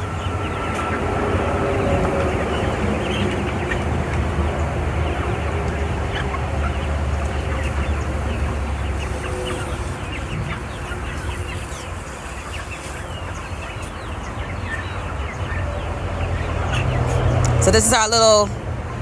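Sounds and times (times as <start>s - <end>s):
chickens clucking and chirping: 0.0s - 19.0s.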